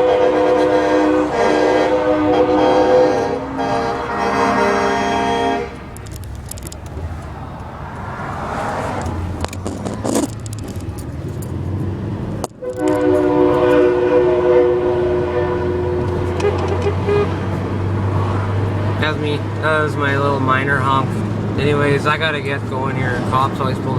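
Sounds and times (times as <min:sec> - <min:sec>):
truck air horns chord: 0:00.0 - 0:06.0, 0:12.6 - 0:17.6
passing traffic: 0:00.0 - 0:23.9.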